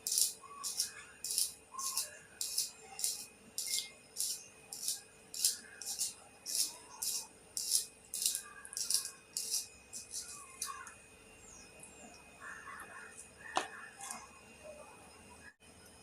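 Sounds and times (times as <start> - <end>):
pencil sharpener scraping: 0.0 - 10.8.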